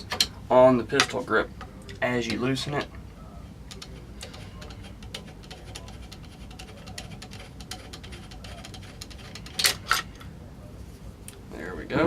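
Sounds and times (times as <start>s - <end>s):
screwdriver scraping metal screw: 3.7s - 10.0s.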